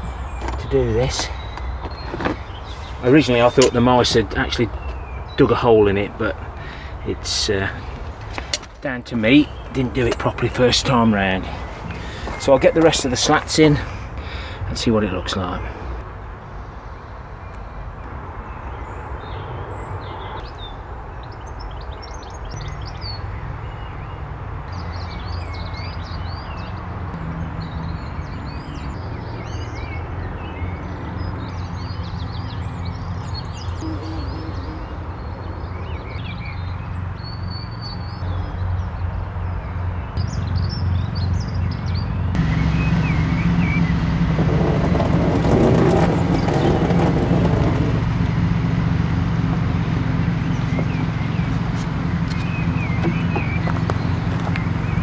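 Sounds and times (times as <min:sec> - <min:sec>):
small birds chirping and singing: 0:00.0 - 0:44.0, 0:50.2 - 0:55.0
low engine-like drone: 0:30.6 - 0:36.8, 0:39.8 - 0:55.0
loud rushing noise: 0:42.4 - 0:52.9.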